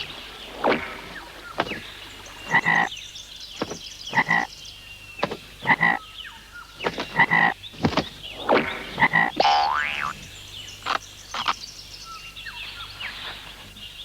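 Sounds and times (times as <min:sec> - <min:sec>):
frog-like croaking calls: 0:02.4 - 0:02.9, 0:04.1 - 0:04.5, 0:05.6 - 0:06.1, 0:06.9 - 0:07.6, 0:08.3 - 0:10.2.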